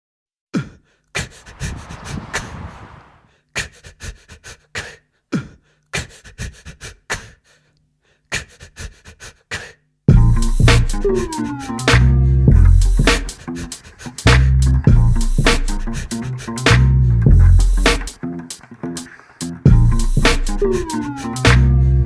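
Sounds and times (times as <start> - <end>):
song beat and bass: 10.1 - 13.4, 14.3 - 18.1.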